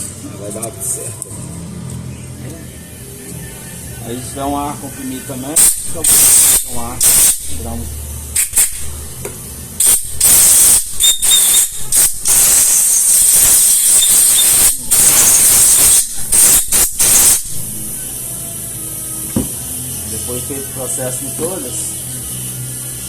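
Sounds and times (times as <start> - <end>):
compressed air blow gun hissing: 5.6 - 7.6, 8.3 - 8.9, 9.8 - 17.7.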